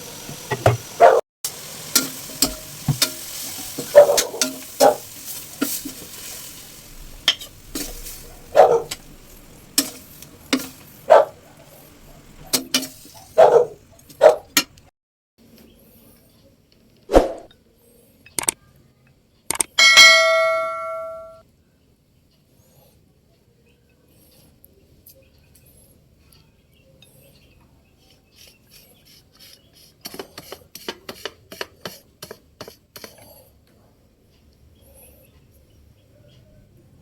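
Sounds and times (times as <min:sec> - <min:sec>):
faint sizzle: 0:00.0 - 0:14.1
metal utensil scraping a pan: 0:01.6 - 0:11.0, 0:11.9 - 0:13.4
clicks: 0:18.3 - 0:18.6, 0:19.5 - 0:19.8
metal clang: 0:19.8 - 0:21.4.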